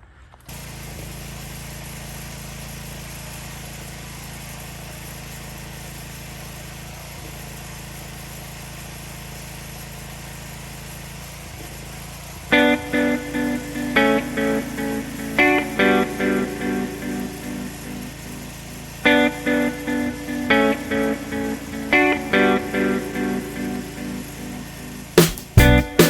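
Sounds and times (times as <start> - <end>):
pressure washer motor hum: 0.5 - 26.0.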